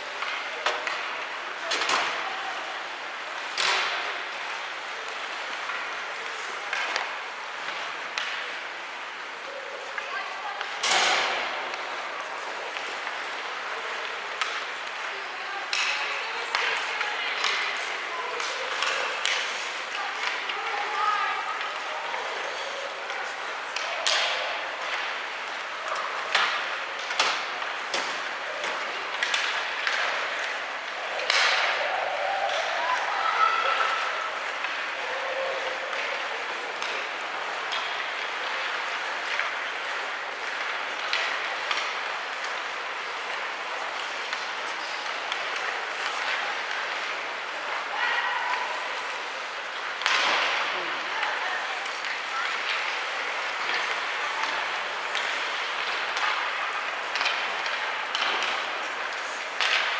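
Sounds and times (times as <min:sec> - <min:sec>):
arena crowd noise: 0:00.0 - 0:59.9
hockey sticks clacking on puck: 0:00.1 - 0:09.2, 0:09.9 - 0:59.9
skate blades scraping ice: 0:11.7 - 0:23.8, 0:33.8 - 0:48.0, 0:48.6 - 0:59.9.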